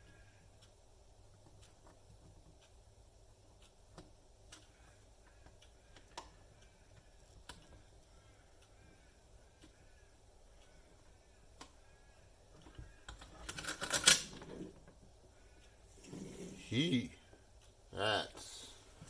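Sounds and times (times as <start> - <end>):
faint low hum: 0.0 - 19.0
small clicks and taps: 0.6 - 8.8, 10.6 - 11.9, 12.5 - 15.7.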